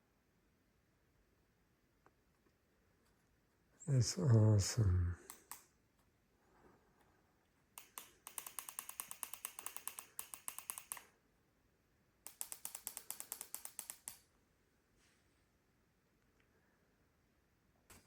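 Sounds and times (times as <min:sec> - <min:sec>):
rapid plastic clicks: 0:07.8 - 0:11.1, 0:12.2 - 0:14.2.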